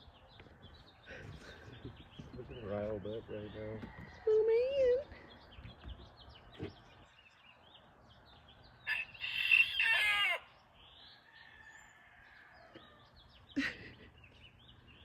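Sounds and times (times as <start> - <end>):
small birds chirping: 0.0 - 15.0
rooster crowing: 8.9 - 10.5.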